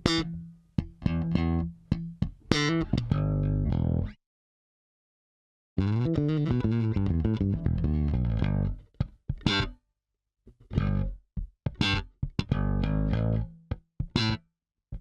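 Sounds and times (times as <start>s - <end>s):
bass riff: 0.0s - 4.2s, 5.8s - 9.7s, 10.6s - 14.4s.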